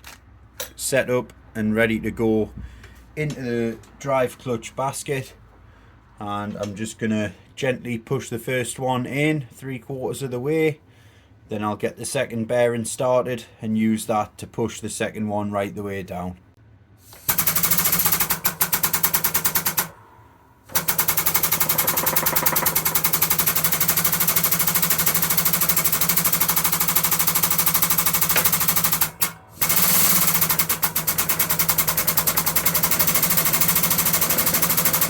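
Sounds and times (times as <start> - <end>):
air-powered press rattling: 17.0 - 35.0.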